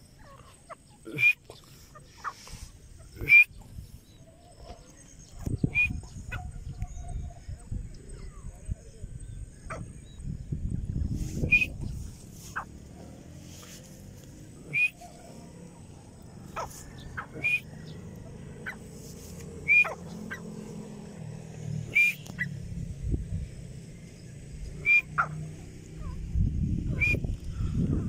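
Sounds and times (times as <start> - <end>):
francolin calling: 0.0 - 7.3, 11.4 - 22.8, 24.1 - 26.3, 26.9 - 27.8.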